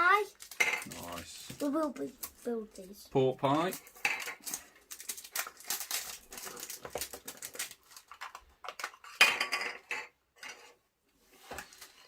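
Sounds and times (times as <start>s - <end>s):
packs rustling: 0.0s - 2.0s.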